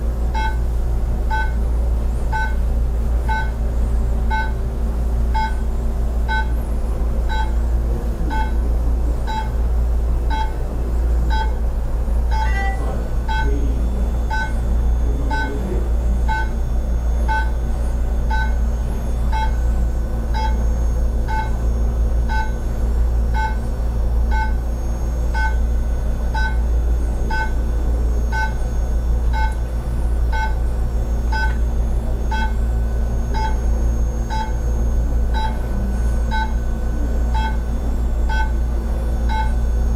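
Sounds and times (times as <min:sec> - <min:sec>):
steady low hum: 0:00.0 - 0:39.9
two-pitched electronic beeps: 0:00.3 - 0:00.6, 0:01.3 - 0:01.6, 0:02.3 - 0:02.7, 0:03.3 - 0:03.6, 0:04.3 - 0:04.6, 0:05.3 - 0:05.7, 0:06.3 - 0:06.6, 0:07.3 - 0:07.6, 0:08.3 - 0:08.6, 0:09.3 - 0:09.6, 0:10.3 - 0:10.6, 0:11.3 - 0:11.6, 0:12.3 - 0:14.7, 0:15.3 - 0:16.6, 0:17.2 - 0:17.6, 0:18.3 - 0:18.7, 0:19.3 - 0:19.6, 0:20.3 - 0:21.6, 0:22.3 - 0:22.6, 0:23.3 - 0:23.6, 0:24.3 - 0:24.6, 0:25.3 - 0:25.7, 0:26.3 - 0:26.7, 0:27.3 - 0:27.6, 0:28.3 - 0:28.6, 0:29.3 - 0:29.6, 0:30.3 - 0:30.6, 0:31.3 - 0:31.7, 0:32.3 - 0:32.7, 0:33.3 - 0:35.7, 0:36.3 - 0:36.6, 0:37.3 - 0:38.6, 0:39.2 - 0:39.7.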